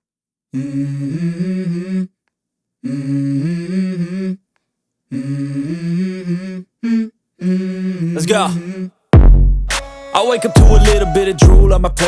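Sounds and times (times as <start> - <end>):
hummed vocal melody: 0.6 - 2.2, 2.8 - 4.5, 5.1 - 9.0, 9.8 - 12.0.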